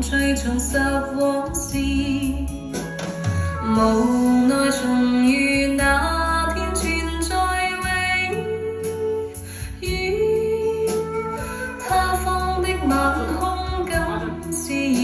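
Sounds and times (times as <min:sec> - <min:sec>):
pop ballad over loudspeaker: 0:00.0 - 0:15.0.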